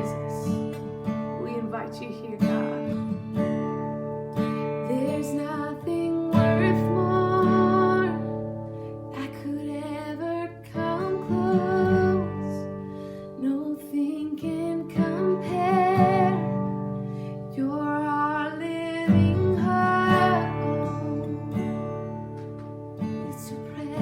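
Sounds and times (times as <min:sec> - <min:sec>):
strummed acoustic guitar: 0:00.0 - 0:24.0
person singing: 0:04.9 - 0:08.4, 0:09.2 - 0:12.7.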